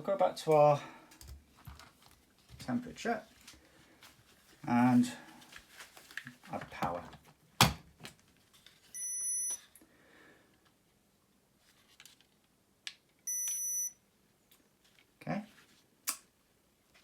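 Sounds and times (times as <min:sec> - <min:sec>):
high-pitched electronic beeps: 0:13.3 - 0:14.0.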